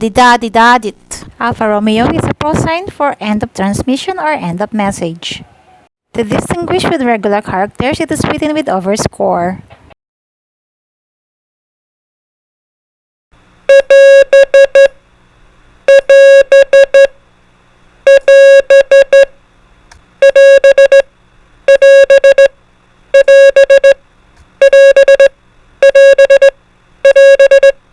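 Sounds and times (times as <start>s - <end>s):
morse code beeps: 13.7s - 14.9s, 15.9s - 17.1s, 18.1s - 19.3s, 20.2s - 21.0s, 21.7s - 22.5s, 23.2s - 24.0s, 24.6s - 27.8s.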